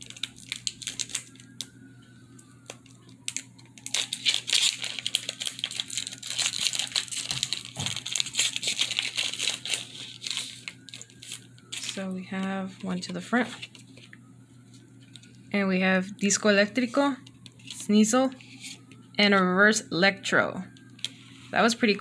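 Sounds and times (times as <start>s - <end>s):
plastic wrapper tearing and crinkling: 0.0s - 1.7s, 2.3s - 14.2s, 17.2s - 19.1s.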